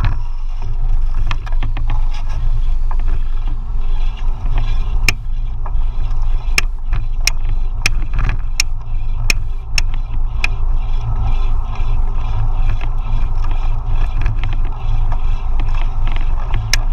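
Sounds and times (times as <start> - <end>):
low rumble of riding and wind: 0.0 - 16.9
sharp ticks: 4.5 - 16.9.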